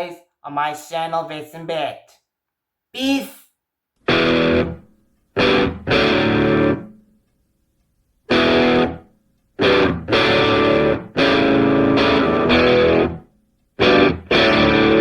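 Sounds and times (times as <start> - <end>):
distorted electric guitar chords: 4.0 - 7.0, 8.3 - 15.0.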